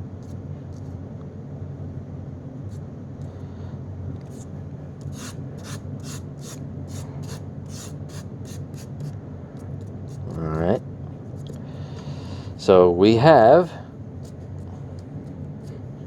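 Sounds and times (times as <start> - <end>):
steady low hum: 0.0 - 16.0
dry rubbing and scraping strokes: 5.0 - 9.1.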